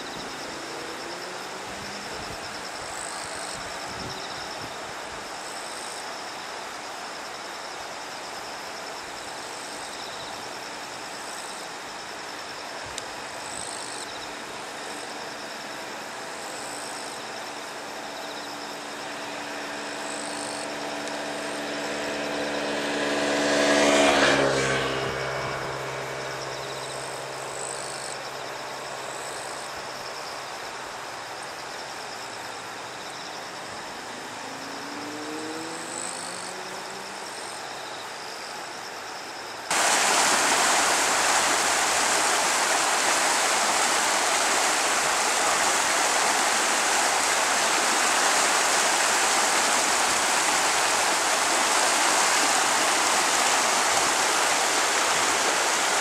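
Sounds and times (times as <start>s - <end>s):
stream water rushing: 39.7s - 56.0s.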